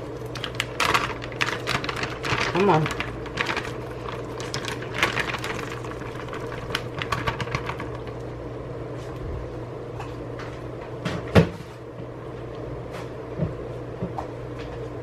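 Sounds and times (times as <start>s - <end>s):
plastic bag rustling: 0.0s - 8.2s.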